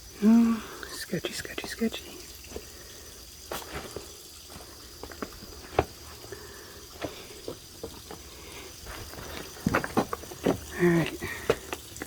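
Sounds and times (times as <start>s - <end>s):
boots scuffing on boulders: 3.4s - 11.9s.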